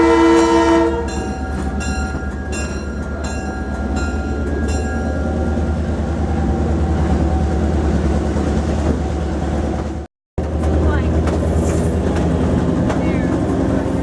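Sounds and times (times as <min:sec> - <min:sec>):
locomotive air horn blasts: 0:00.0 - 0:01.2
train rumbling along rails: 0:00.0 - 0:14.0.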